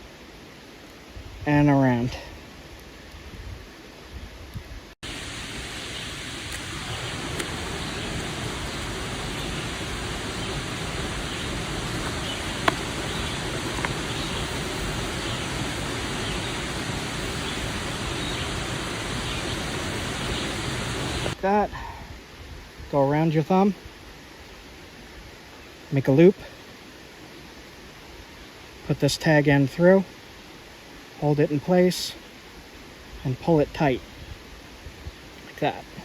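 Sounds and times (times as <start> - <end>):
creek water rushing: 5.0 - 36.0
faint clicks: 11.9 - 14.0.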